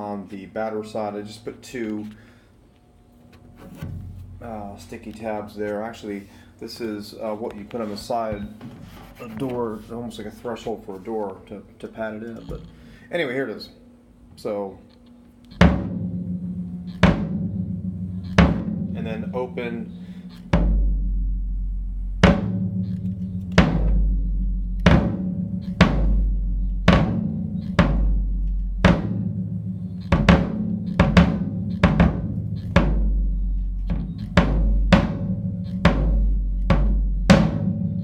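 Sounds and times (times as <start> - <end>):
bass drum booming: 3.7 - 5.7, 15.6 - 38.0
snare drum hits: 16.9 - 17.5, 18.2 - 21.0, 22.2 - 29.2, 30.0 - 38.0.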